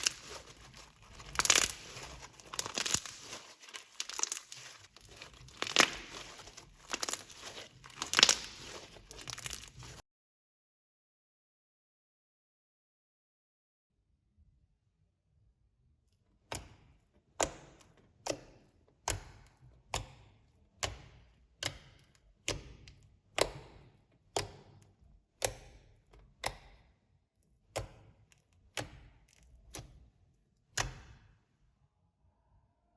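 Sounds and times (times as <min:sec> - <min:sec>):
slime popping and clicking: 0:00.0 - 0:10.0.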